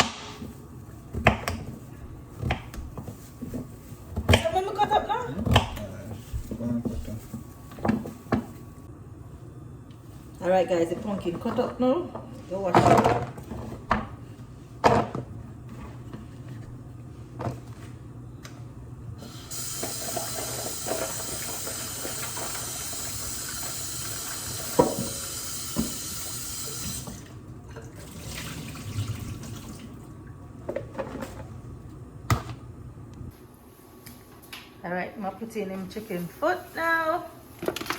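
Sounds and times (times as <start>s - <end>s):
tap running into a sink: 19.5s - 27.3s.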